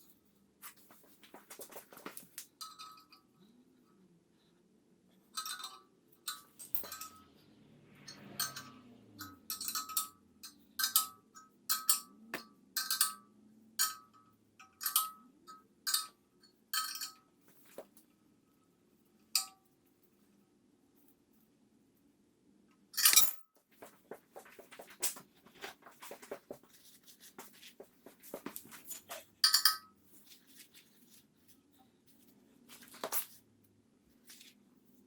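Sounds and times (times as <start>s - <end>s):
hammer clinking on steel: 23.0s - 23.4s.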